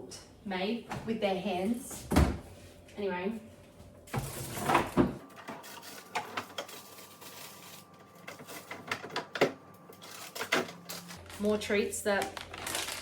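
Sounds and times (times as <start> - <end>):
food packets knocking and rustling: 12.2 - 13.0.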